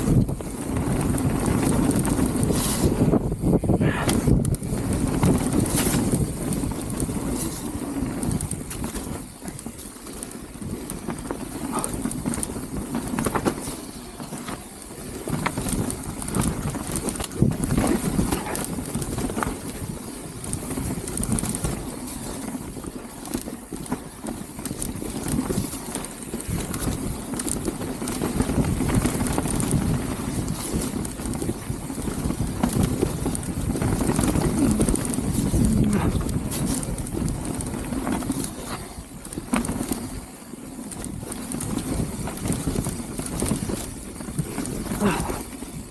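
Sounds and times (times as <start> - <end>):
wind buffeting microphone: 0.0 - 9.9, 14.6 - 22.0, 24.5 - 40.2
bike frame and chain rattling: 0.0 - 45.9
bike tyres on mud: 0.0 - 45.9.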